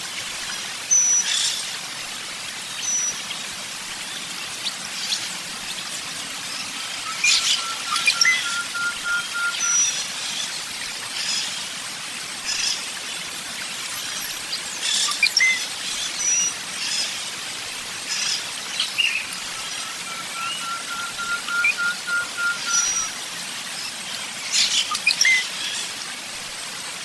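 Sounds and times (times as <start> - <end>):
birds chirping and calling: 7.1 - 10.0, 18.2 - 23.2.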